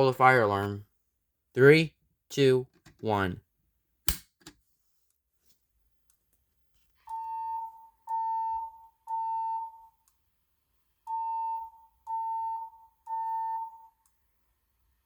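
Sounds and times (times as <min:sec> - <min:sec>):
fire alarm evacuation beeps: 0:07.1 - 0:10.0, 0:11.1 - 0:14.0.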